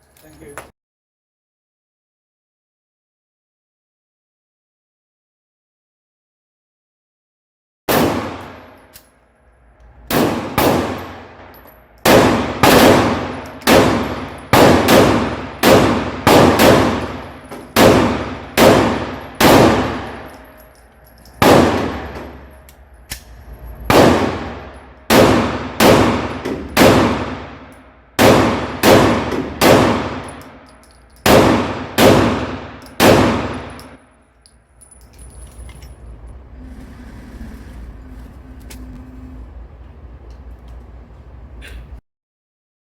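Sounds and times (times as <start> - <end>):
pistol shots: 7.9 - 8.7, 10.1 - 11.4, 12.0 - 20.3, 21.4 - 22.4, 23.9 - 30.6, 31.2 - 33.9.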